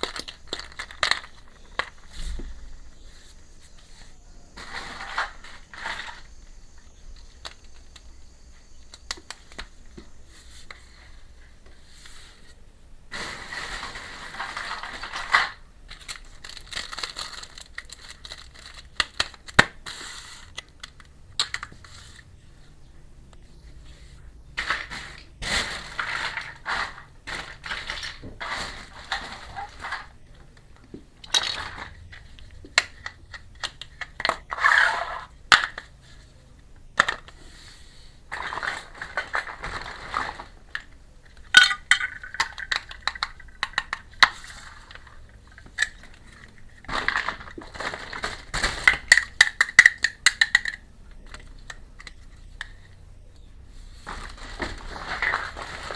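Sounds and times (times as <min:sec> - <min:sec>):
toy pieces clicking and tapping: 0:00.0 - 0:02.1, 0:41.4 - 0:45.0, 0:48.8 - 0:52.8
toy pieces rattling and scraping: 0:00.0 - 0:08.2, 0:13.2 - 0:22.3, 0:24.6 - 0:30.4, 0:31.2 - 0:36.3, 0:37.0 - 0:53.0, 0:53.9 - 0:55.9.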